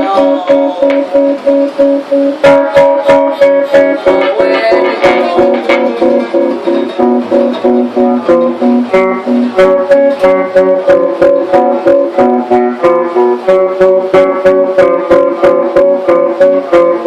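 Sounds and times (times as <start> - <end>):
guitar strummed: 0.0 - 17.0.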